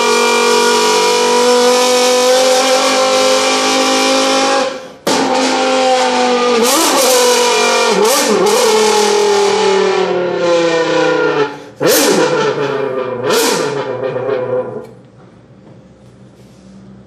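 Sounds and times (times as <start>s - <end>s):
voice imitating engine: 1.3s - 15.0s.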